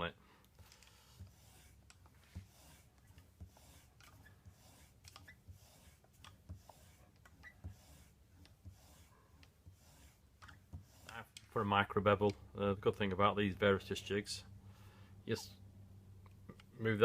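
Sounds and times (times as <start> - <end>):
chisel honing strokes: 0.6 - 13.3.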